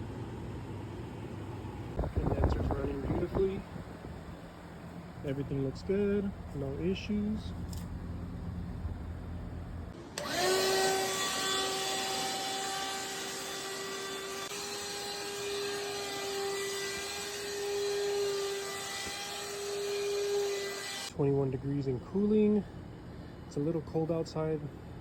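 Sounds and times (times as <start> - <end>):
blower fan rushing air: 0.0 - 20.2
motor whine: 1.9 - 21.1.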